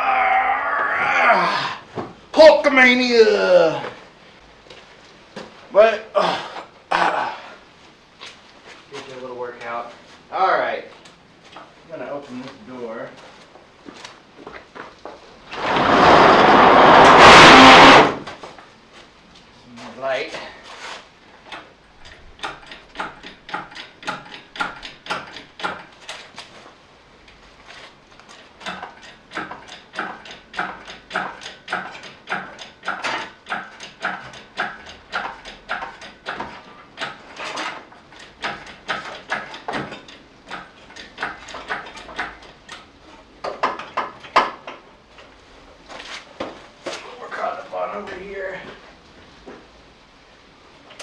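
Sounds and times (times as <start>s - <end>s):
hoist ratcheting clicks: 21.5s - 26.2s, 28.4s - 36.4s.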